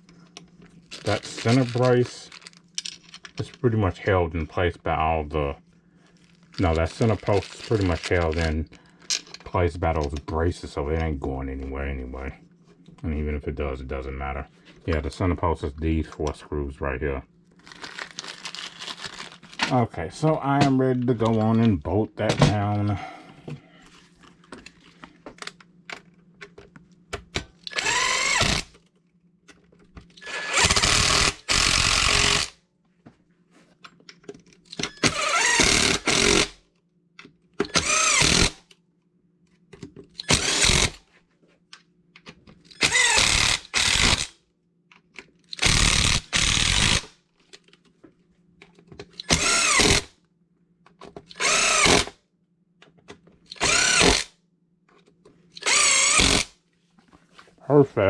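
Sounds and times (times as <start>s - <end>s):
power drill whine: 27.7s - 28.7s, 30.2s - 32.5s, 34.9s - 36.5s, 37.7s - 38.6s, 40.2s - 41.0s, 42.8s - 44.3s, 45.6s - 47.0s, 49.2s - 50.1s, 51.3s - 52.1s, 53.5s - 54.3s, 55.6s - 56.5s.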